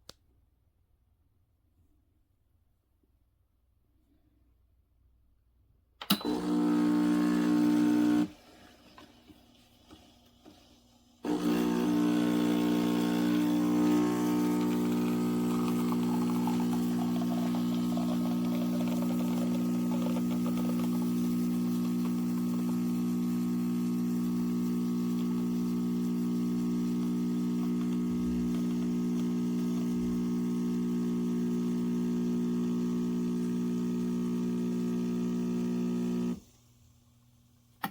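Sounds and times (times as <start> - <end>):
espresso machine pump humming: 6.1 - 9.2, 11.2 - 36.4
water hissing: 11.2 - 30.2.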